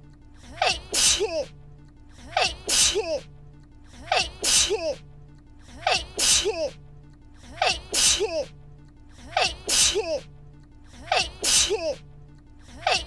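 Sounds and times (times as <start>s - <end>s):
person sneezing: 0.6s - 1.5s, 2.3s - 3.3s, 4.0s - 5.0s, 5.8s - 6.8s, 7.6s - 8.5s, 9.3s - 10.3s, 11.0s - 12.0s.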